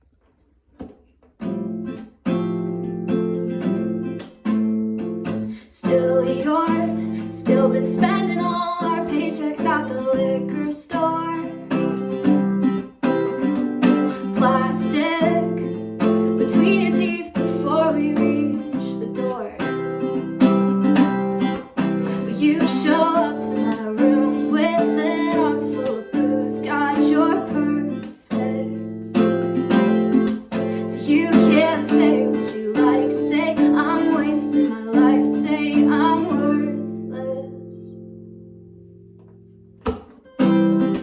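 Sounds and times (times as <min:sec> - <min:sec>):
strummed acoustic guitar: 0:00.7 - 0:41.0
person singing: 0:05.5 - 0:12.2, 0:13.9 - 0:19.8, 0:21.9 - 0:29.3, 0:30.3 - 0:37.9.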